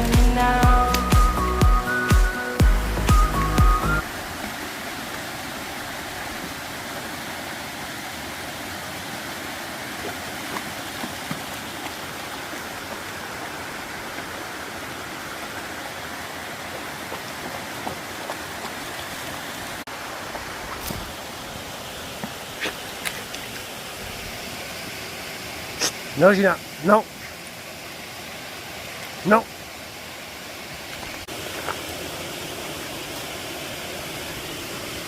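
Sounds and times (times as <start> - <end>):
flowing water rushing: 0.0 - 35.0.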